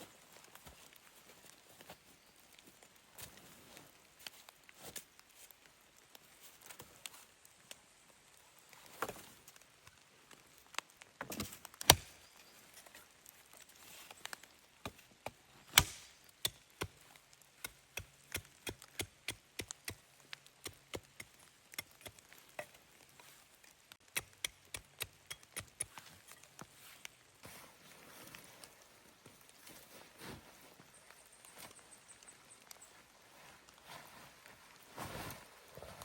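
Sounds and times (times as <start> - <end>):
axe chopping wood: 11.4 - 12.2, 15.7 - 17.0, 17.6 - 20.0, 24.1 - 26.0.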